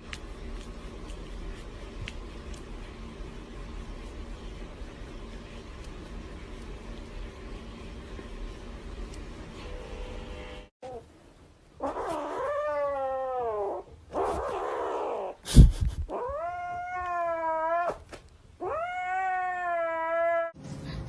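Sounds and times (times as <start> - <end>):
cat yowling: 11.8 - 15.4, 18.6 - 20.6.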